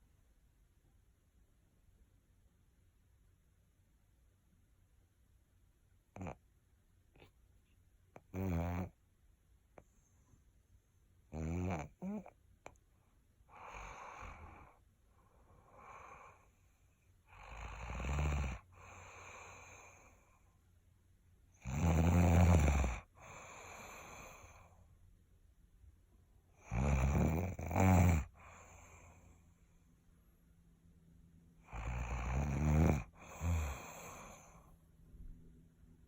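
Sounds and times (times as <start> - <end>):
person snoring: 8.2 - 8.9, 11.3 - 12.3, 21.6 - 24.7, 26.6 - 29.3, 31.7 - 34.7
soft breath out: 33.2 - 34.8.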